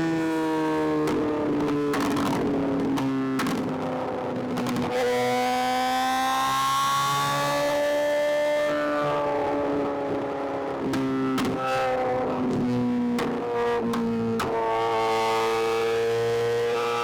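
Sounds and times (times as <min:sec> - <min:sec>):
exhaust crackling and popping: 0:12.3 - 0:15.2.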